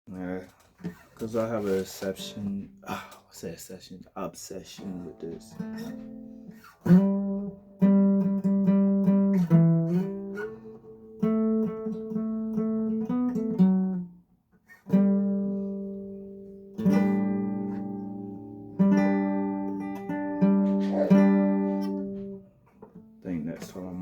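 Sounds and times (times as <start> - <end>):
acoustic guitar chords strummed: 4.8 - 14.1, 14.9 - 24.0.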